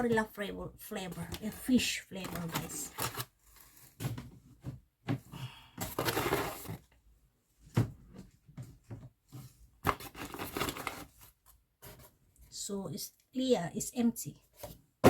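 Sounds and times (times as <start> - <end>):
packages rustling and scraping: 1.1 - 4.7, 5.8 - 7.0, 8.7 - 12.2.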